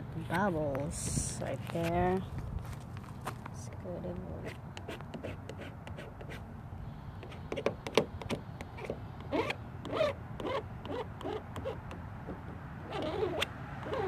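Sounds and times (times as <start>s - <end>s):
rasping strokes on decal: 8.8s - 12.0s, 12.8s - 14.0s.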